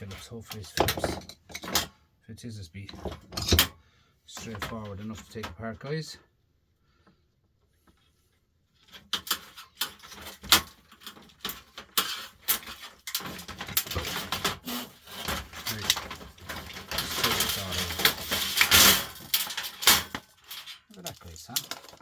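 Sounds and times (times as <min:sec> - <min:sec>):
scraping and rubbing: 0:08.8 - 0:22.0.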